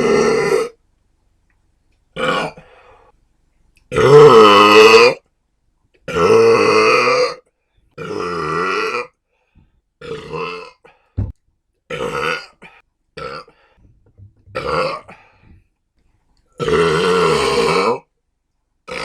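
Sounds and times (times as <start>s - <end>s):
person burping: 2.2s - 2.6s, 3.9s - 5.1s, 6.1s - 7.4s, 8.0s - 9.1s, 10.0s - 11.3s, 11.9s - 13.5s, 14.2s - 15.3s, 16.6s - 18.1s
brief low thump: 11.2s - 11.4s, 13.8s - 14.6s.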